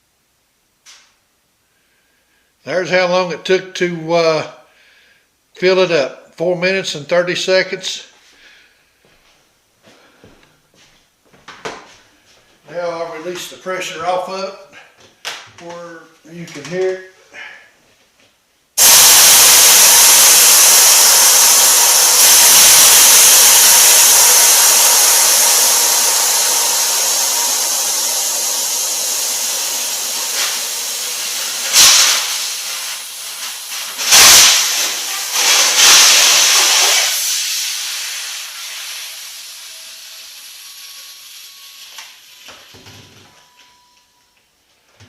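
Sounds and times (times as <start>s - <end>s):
compressed air hissing: 18.8s - 42.7s.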